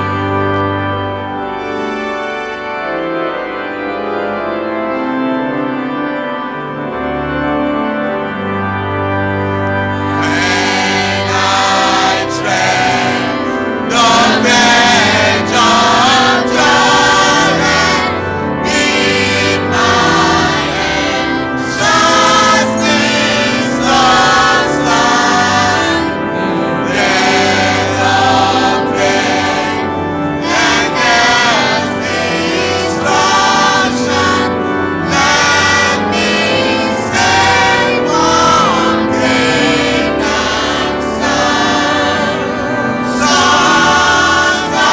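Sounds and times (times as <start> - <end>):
organ: 0.0 - 44.9
choir singing gospel: 9.3 - 44.9.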